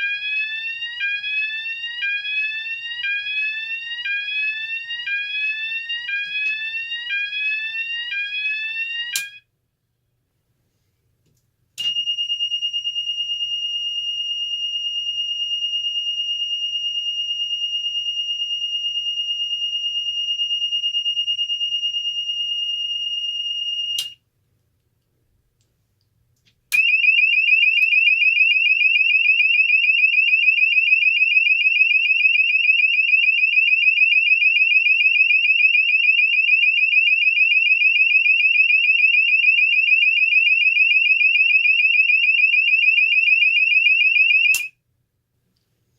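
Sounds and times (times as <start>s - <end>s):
fast warbling alarm tone: 0.0s - 9.4s, 26.8s - 44.7s
muffled high-pitched alarm tone: 0.0s - 9.4s, 11.8s - 24.2s.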